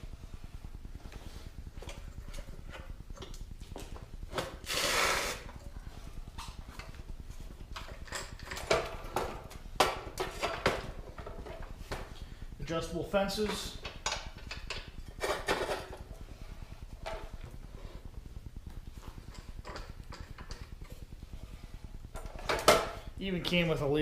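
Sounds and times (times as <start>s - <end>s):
short hissing rush: 4.6s - 5.5s.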